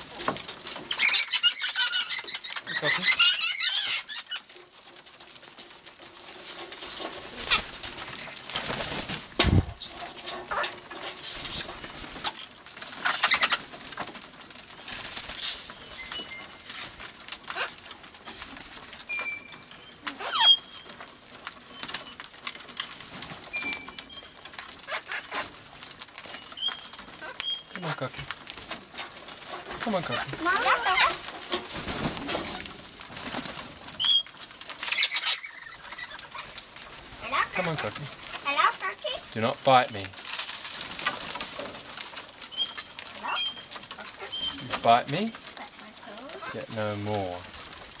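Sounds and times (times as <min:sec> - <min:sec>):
rustling and clicking: 0:00.0 - 0:48.0
wings flapping: 0:00.0 - 0:48.0
parrot chirps and calls: 0:00.8 - 0:04.6, 0:09.8 - 0:11.7, 0:12.4 - 0:13.8, 0:15.2 - 0:16.8, 0:17.4 - 0:17.9, 0:19.1 - 0:22.2, 0:23.5 - 0:28.3, 0:28.9 - 0:31.5, 0:34.0 - 0:39.4, 0:42.4 - 0:46.7.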